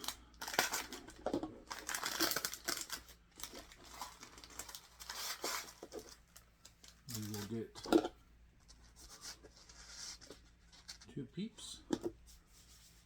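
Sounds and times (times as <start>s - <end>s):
plastic packaging crinkling: 0.0s - 8.0s.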